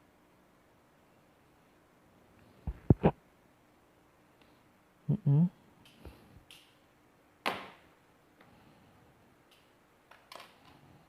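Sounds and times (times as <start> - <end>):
person grunting: 5.1 - 5.6.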